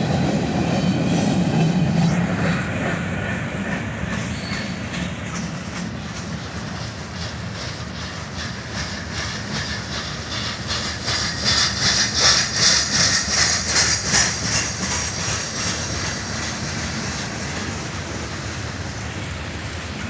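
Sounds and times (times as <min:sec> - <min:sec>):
train low rumble: 0:00.0 - 0:20.0
train wheels clicking over rail joints: 0:00.0 - 0:20.0
high-pitched rush: 0:01.0 - 0:04.5.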